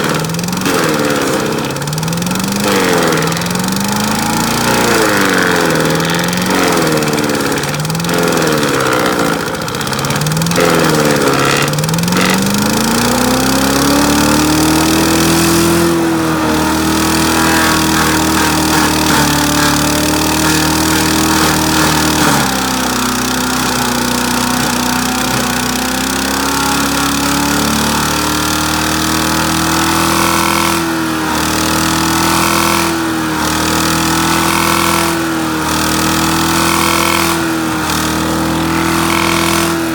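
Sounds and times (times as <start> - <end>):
wood chipper engine running: 0.0 - 39.9.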